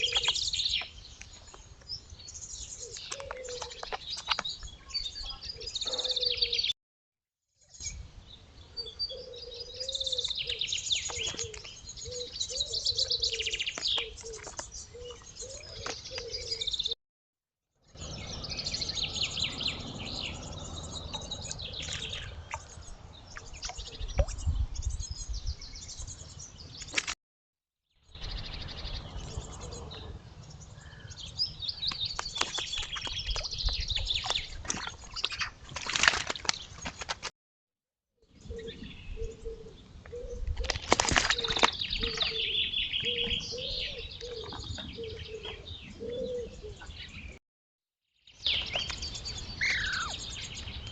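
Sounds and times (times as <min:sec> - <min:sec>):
small birds chirping and singing: 0:00.0 - 0:06.8, 0:07.6 - 0:17.0, 0:17.8 - 0:27.2, 0:27.9 - 0:35.8, 0:38.2 - 0:47.4, 0:48.2 - 0:50.9.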